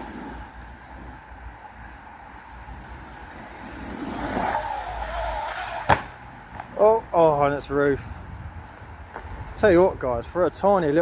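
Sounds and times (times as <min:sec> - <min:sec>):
wind rumble on microphone: 0:07.4 - 0:11.0.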